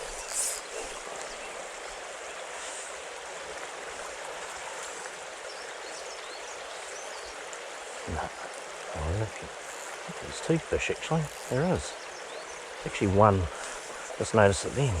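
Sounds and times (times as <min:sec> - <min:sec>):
short high hiss: 0:00.0 - 0:01.0
stream flowing over rocks: 0:00.0 - 0:15.0.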